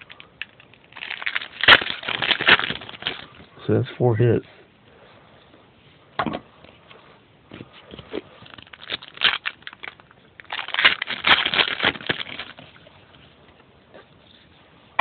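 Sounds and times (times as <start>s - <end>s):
foil wrapper crinkling: 0.0s - 3.4s, 8.0s - 13.0s.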